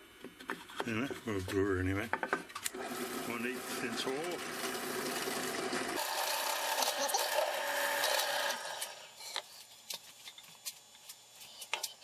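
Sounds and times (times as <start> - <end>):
drill press boring wood: 2.7 - 9.0.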